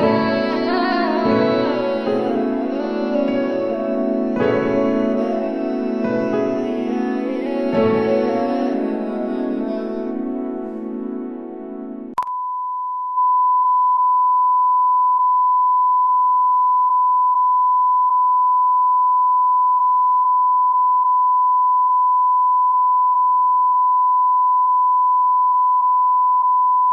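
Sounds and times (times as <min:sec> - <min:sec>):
steady electronic sine tone: 0:11.2 - 0:26.9.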